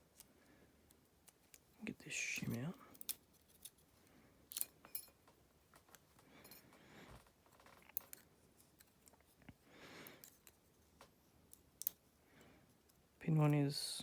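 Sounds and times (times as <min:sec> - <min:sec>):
small metal parts clinking: 0:01.2 - 0:09.4, 0:11.5 - 0:12.0.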